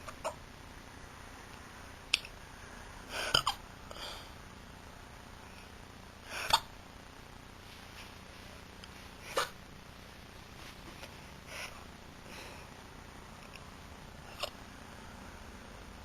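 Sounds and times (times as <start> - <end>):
soft breath: 2.4 - 4.5, 11.2 - 12.9
woman hiccuping: 3.3 - 3.6, 6.4 - 6.7.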